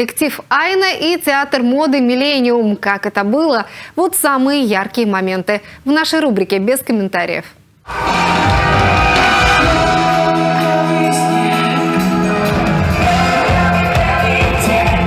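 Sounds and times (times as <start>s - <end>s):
brass band chords: 7.9s - 15.0s
drum beat: 7.9s - 15.0s.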